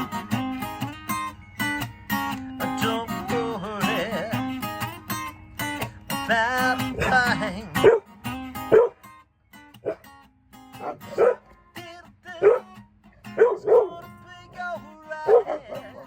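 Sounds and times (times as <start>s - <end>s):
acoustic guitar notes: 0.0s - 16.0s
puppies barking and yipping: 6.9s - 9.0s, 9.8s - 10.1s, 10.8s - 11.6s, 12.4s - 16.0s.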